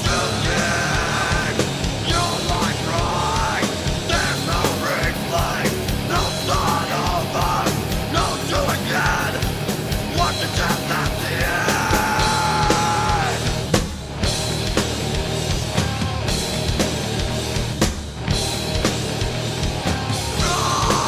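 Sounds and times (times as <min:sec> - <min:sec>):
shouted lead vocal: 0:00.0 - 0:13.7, 0:20.1 - 0:21.0
rock band playing: 0:00.0 - 0:21.0.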